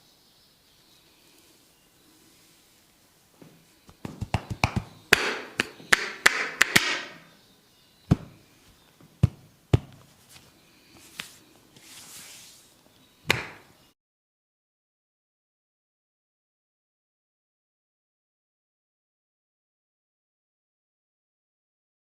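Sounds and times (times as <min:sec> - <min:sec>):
hands slapping in massage: 0:03.8 - 0:07.3, 0:08.1 - 0:08.4, 0:09.2 - 0:12.5, 0:13.3 - 0:13.7.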